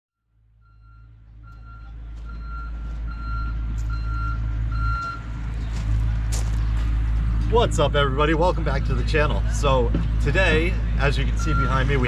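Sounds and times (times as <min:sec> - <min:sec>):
machine engine rumble: 0:00.3 - 0:12.0
reversing alarm beeping: 0:00.6 - 0:05.3, 0:11.3 - 0:12.0.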